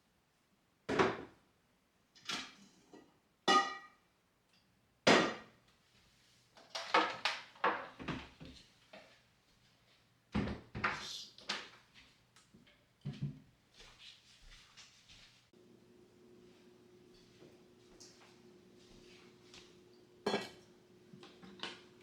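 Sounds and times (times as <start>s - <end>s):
objects knocking and clunking: 6.6s - 8.6s, 12.6s - 13.5s, 20.0s - 22.0s.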